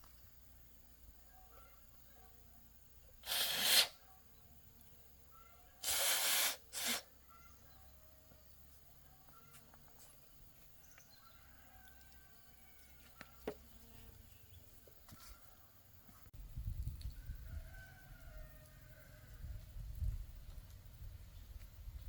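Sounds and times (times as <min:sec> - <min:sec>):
faint rooster crowing: 0:10.9 - 0:13.4, 0:17.1 - 0:19.8.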